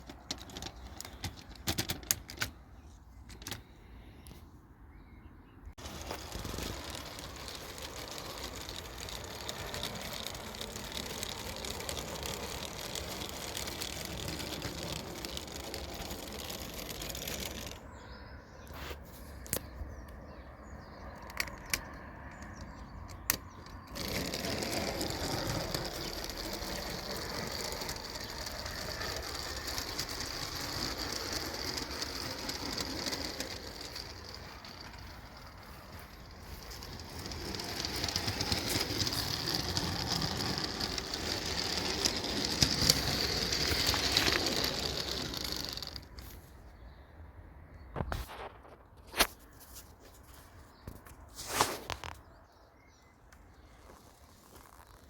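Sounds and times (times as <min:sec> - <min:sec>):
small electric motors whirring: 0:05.8 - 0:18.0, 0:21.2 - 0:46.4.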